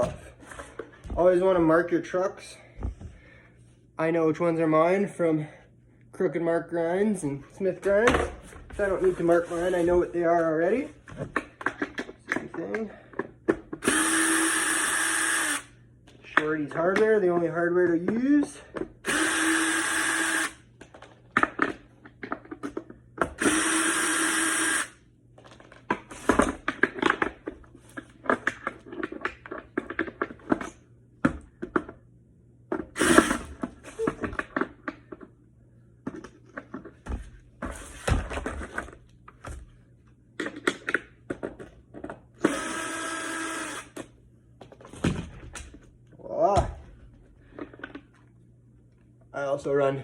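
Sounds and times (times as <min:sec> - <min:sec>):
cordless drill running: 0:13.8 - 0:15.7, 0:19.0 - 0:20.6, 0:23.4 - 0:25.0, 0:33.0 - 0:33.6, 0:42.4 - 0:44.0.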